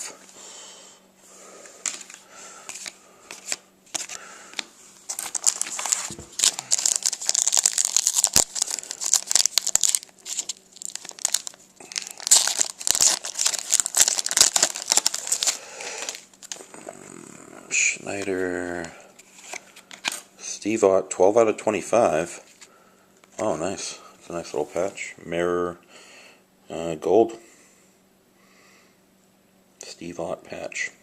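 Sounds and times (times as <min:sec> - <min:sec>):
foil wrapper crinkling and tearing: 0:05.1 - 0:16.6.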